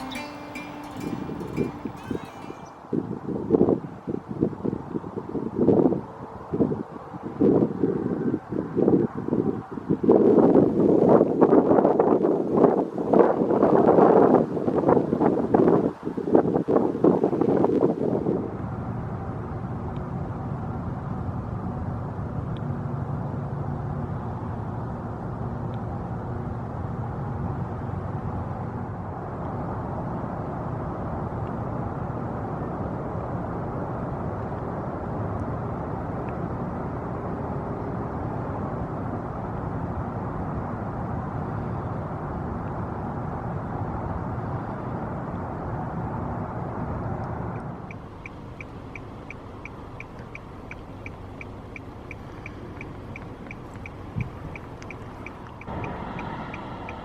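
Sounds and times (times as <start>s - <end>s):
faint high ticks: 47.6s - 57.0s
steady low rumble: 47.6s - 57.0s.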